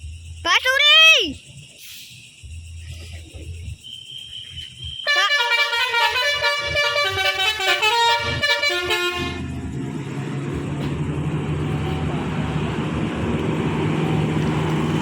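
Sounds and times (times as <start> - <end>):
bus engine running: 4.9 - 15.0
multi-note bus horn melody: 5.1 - 9.8.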